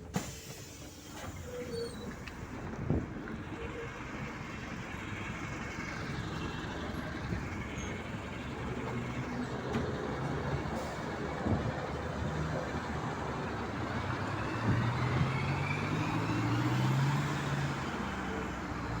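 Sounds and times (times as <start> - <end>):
bus engine running: 0.0 - 19.0
road noise: 0.0 - 19.0.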